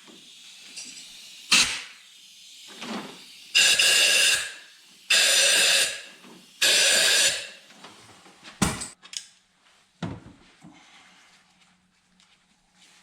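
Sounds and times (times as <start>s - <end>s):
hissing spray bursts: 0.0s - 7.8s.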